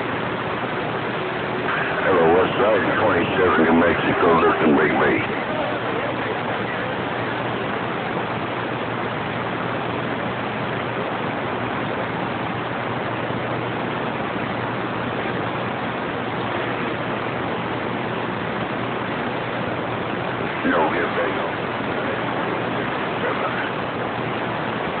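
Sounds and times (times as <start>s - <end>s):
radio static hiss: 0.0s - 8.4s, 14.5s - 25.0s
faint low hum: 0.7s - 10.3s.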